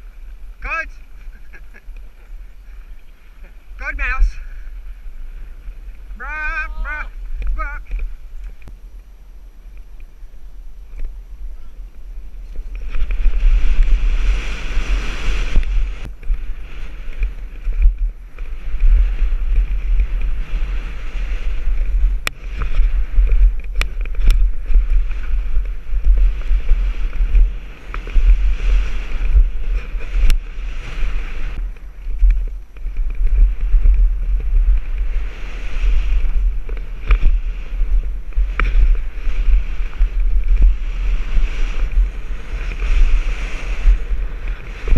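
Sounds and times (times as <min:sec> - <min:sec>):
wind buffeting microphone: 0:00.0 - 0:44.9
bike clicks and rattles: 0:15.6 - 0:20.7, 0:21.5 - 0:30.6, 0:31.6 - 0:35.2, 0:36.0 - 0:42.9.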